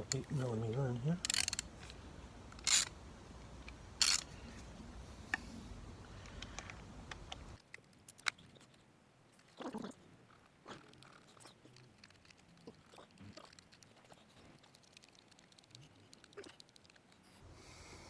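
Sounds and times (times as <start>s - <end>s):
wrench clicking on metal parts: 1.2s - 1.7s, 2.6s - 2.9s, 4.0s - 4.3s.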